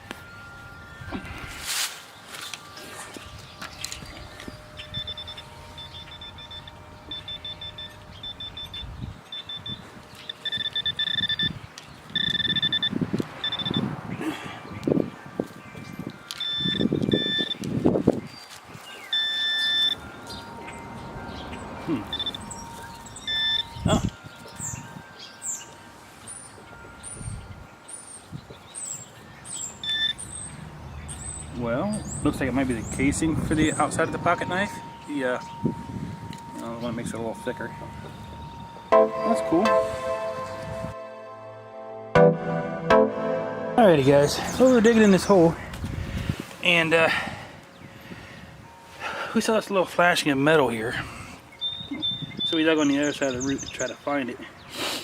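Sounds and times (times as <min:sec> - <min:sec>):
bird chirping: 0:02.1 - 0:13.9, 0:14.8 - 0:39.7, 0:43.9 - 0:45.5, 0:51.5 - 0:54.8
metal detector beeping: 0:02.3 - 0:13.9, 0:16.3 - 0:17.8, 0:18.9 - 0:20.8, 0:21.9 - 0:25.7, 0:29.8 - 0:30.3
lower detector tone: 0:02.6 - 0:11.6, 0:12.2 - 0:13.9, 0:16.3 - 0:17.7, 0:19.1 - 0:25.0, 0:29.8 - 0:30.2.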